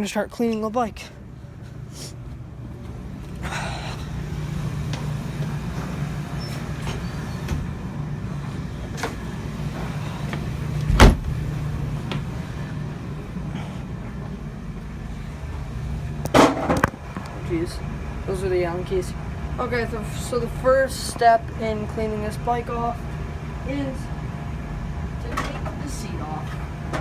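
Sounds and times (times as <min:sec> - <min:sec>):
vehicle engine rumble: 0:01.2 - 0:20.8.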